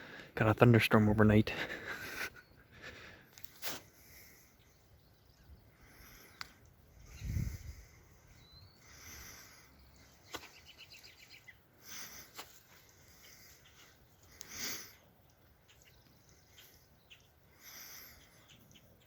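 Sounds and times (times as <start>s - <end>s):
faint bird chirps: 4.2s - 11.7s, 12.8s - 19.0s.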